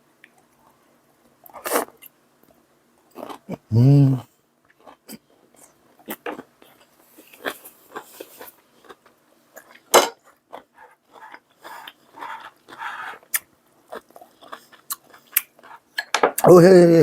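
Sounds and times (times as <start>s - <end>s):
chewing: 3.1s - 3.6s, 4.7s - 16.1s.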